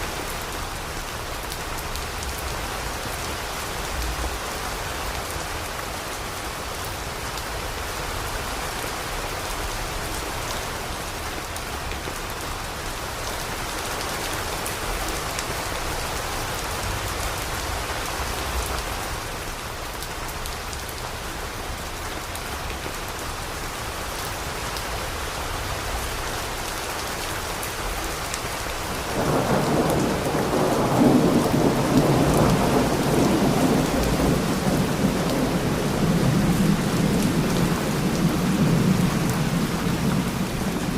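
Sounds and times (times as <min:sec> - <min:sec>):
steady rain falling: 0:00.0 - 0:40.9
thunder rumbling: 0:28.9 - 0:40.9.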